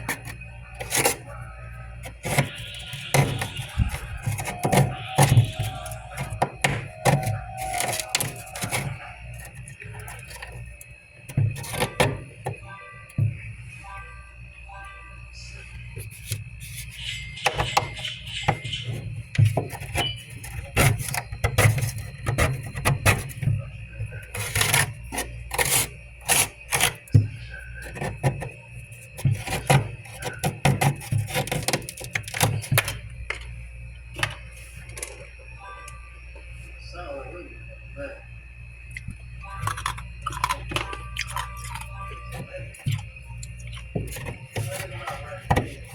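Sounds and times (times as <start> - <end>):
steady low hum: 0.0 - 45.9
frost being scraped off: 2.0 - 10.6, 24.3 - 27.0, 43.8 - 45.9.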